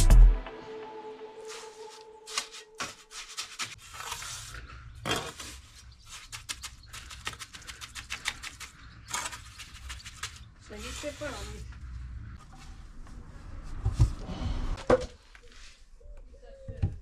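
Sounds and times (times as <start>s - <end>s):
scraping and rubbing: 1.5s - 14.2s.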